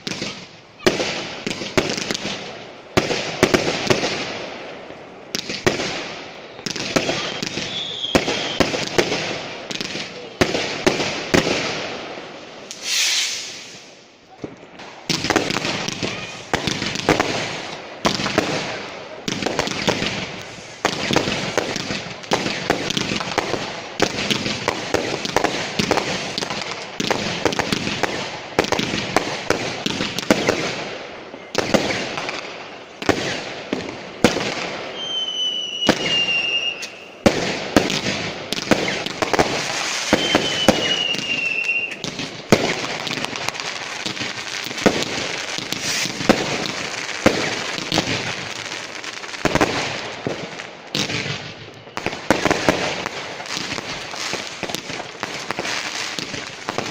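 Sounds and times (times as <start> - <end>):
fireworks bangs and crackling: 0.0 - 56.9
firework whistles falling in pitch: 7.0 - 8.7, 12.7 - 13.9, 34.9 - 37.3, 39.8 - 42.0.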